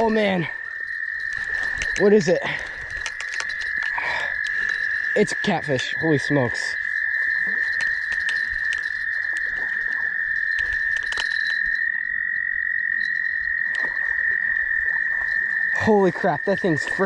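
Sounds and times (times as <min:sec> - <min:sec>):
frog chorus trilling: 0:00.0 - 0:17.0
sharp clicks: 0:01.3 - 0:05.8.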